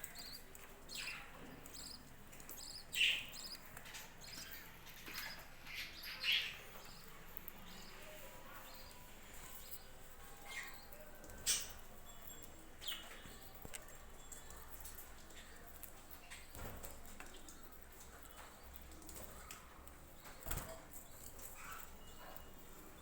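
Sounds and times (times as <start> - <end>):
sharp bird calls: 0.0 - 9.7
budgerigars chirping: 0.0 - 9.8.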